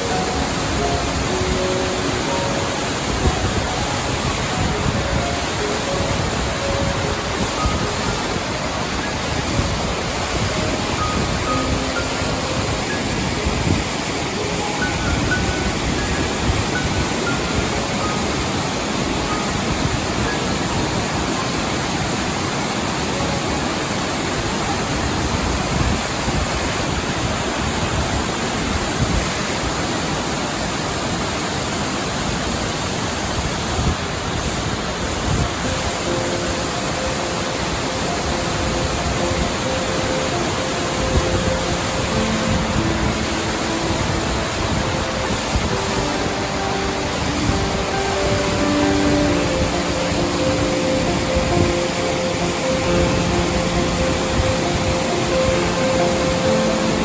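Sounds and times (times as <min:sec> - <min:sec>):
soft calming music: 0:00.0 - 0:57.0
waterfall rushing: 0:00.0 - 0:57.0.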